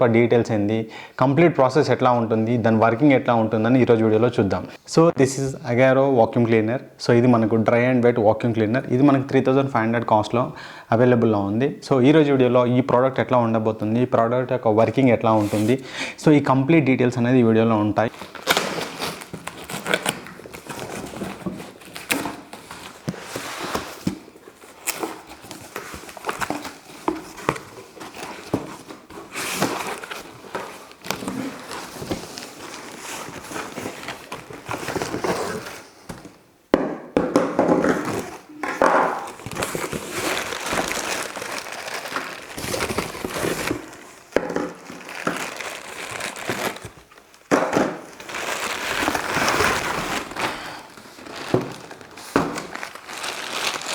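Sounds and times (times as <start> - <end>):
packaging crinkling and rustling: 18.0 - 36.4, 39.2 - 53.9.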